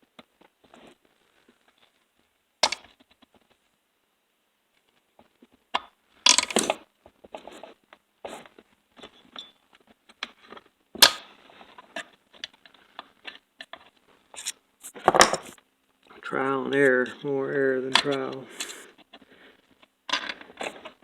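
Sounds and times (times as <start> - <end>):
metal parts clicking and scraping: 20.1 - 21.0.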